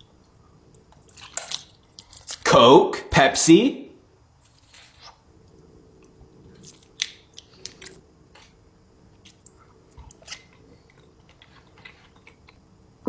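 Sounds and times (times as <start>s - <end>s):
person eating: 0.7s - 2.4s, 4.5s - 12.6s.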